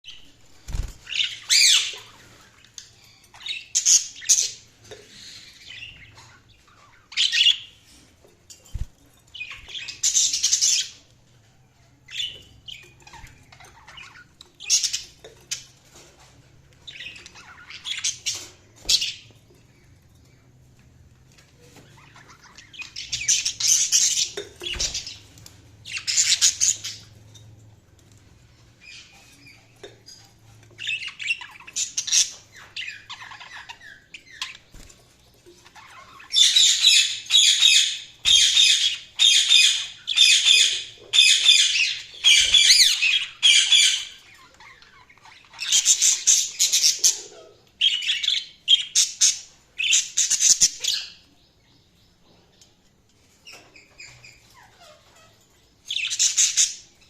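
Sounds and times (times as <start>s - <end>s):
budgerigar chirping: 36.3s - 44.2s.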